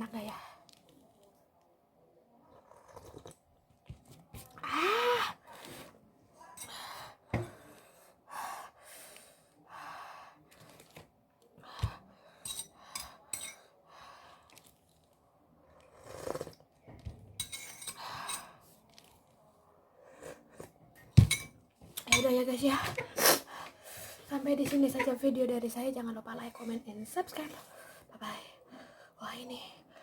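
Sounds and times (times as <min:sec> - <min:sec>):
tableware clinking against bowl: 0:12.5 - 0:13.6, 0:17.4 - 0:18.4, 0:21.2 - 0:22.4
slurping broth: 0:15.8 - 0:16.6.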